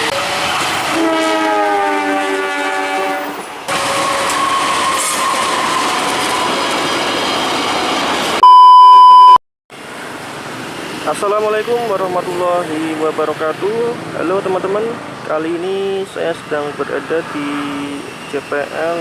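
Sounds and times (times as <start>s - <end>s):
train horn: 0.0s - 5.3s
loud electronic beep: 8.4s - 9.4s.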